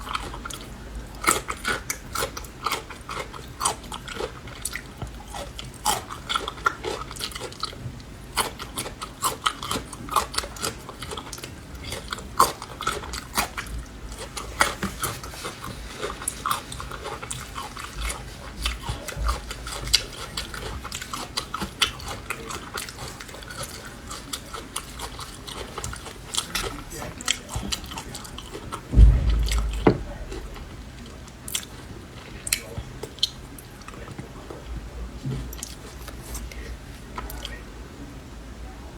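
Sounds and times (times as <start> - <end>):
crunchy chewing: 0.0 - 30.4.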